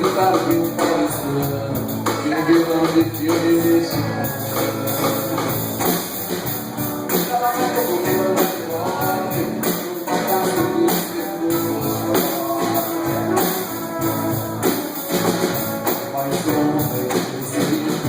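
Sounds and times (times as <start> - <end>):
steady drum beat: 0.0 - 18.0
strummed guitar: 0.0 - 18.0.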